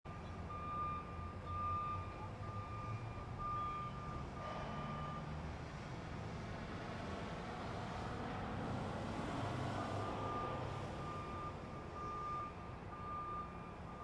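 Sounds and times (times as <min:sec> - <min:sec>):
vehicle backup alarm beeping: 0:00.1 - 0:05.5, 0:09.4 - 0:14.0.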